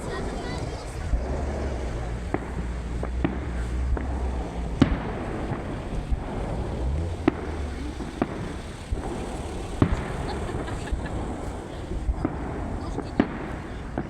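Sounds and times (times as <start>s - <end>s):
fireworks bangs: 0.0s - 14.0s
low rumble: 0.0s - 14.0s.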